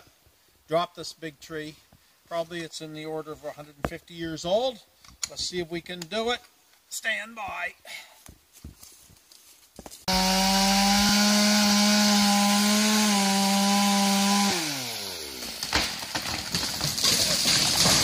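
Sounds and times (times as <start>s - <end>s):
chainsaw cutting: 10.1s - 18.0s
wood cracking: 14.2s - 18.0s
rush of falling tree: 15.1s - 18.0s.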